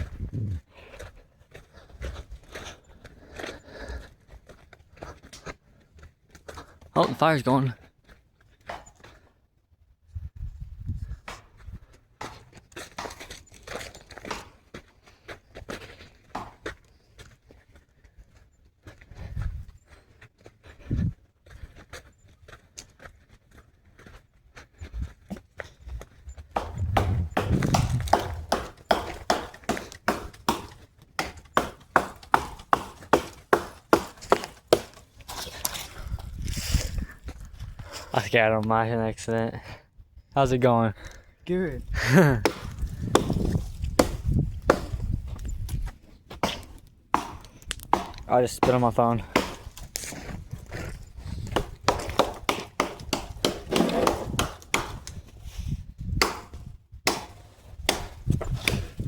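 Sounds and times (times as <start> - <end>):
wood being chopped: 7.0 - 7.5, 12.2 - 13.4, 14.2 - 14.6, 16.3 - 16.7, 26.6 - 35.9, 42.4 - 45.2, 46.4 - 50.1, 51.4 - 55.3, 56.2 - 59.0
sharp knocks on wood: 26.6 - 35.0, 42.4 - 45.0, 46.4 - 48.8, 49.4 - 49.8, 51.6 - 55.1, 56.2 - 58.8.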